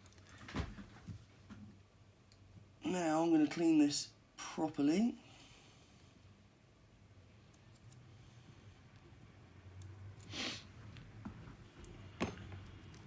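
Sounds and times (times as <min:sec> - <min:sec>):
short breathy hiss: 0:10.3 - 0:10.7.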